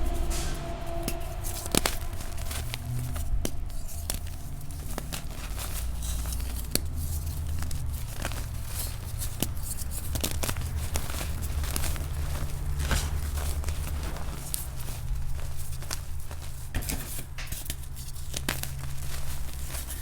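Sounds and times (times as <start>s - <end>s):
chalk crumbling crackles: 0.0s - 20.0s
low steady hum: 0.0s - 20.0s.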